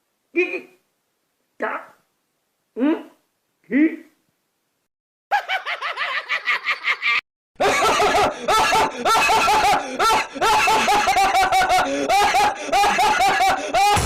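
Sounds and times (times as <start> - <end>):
repeated ha laughter: 5.3 - 14.0.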